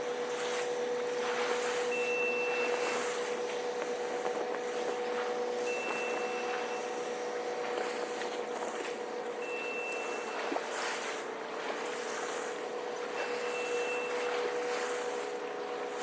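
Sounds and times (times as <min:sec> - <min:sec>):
low engine hum: 0:00.0 - 0:16.0
outdoor background noise: 0:00.0 - 0:16.0
vehicle warning beeper: 0:01.9 - 0:03.2, 0:05.6 - 0:07.2, 0:09.4 - 0:10.5, 0:13.2 - 0:14.6.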